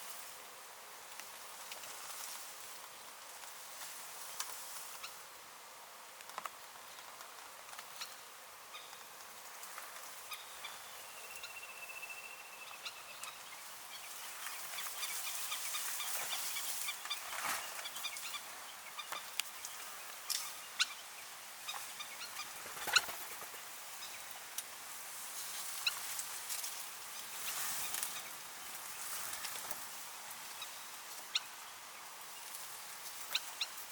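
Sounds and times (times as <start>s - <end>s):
birds chirping and calling: 10.2s - 24.5s.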